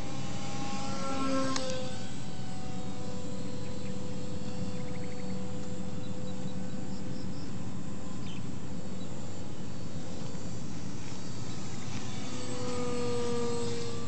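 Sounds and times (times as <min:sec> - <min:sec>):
electric model plane motor whine: 0:00.0 - 0:14.0
outdoor noise: 0:00.0 - 0:14.0.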